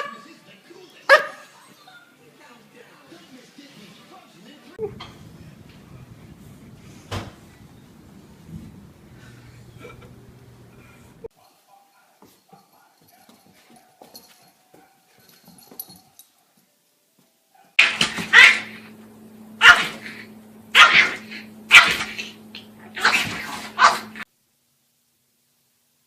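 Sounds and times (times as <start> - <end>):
dog barking and yipping: 1.1 - 2.1, 17.5 - 19.0, 19.6 - 24.3.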